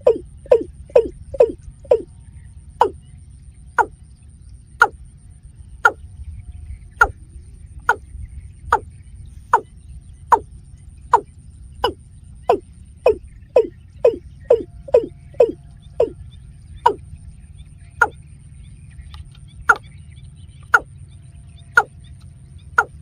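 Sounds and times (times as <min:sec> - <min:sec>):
bird calling downward notes: 0:00.0 - 0:03.2, 0:11.1 - 0:18.2, 0:21.6 - 0:23.0
low steady rumble: 0:00.0 - 0:23.0.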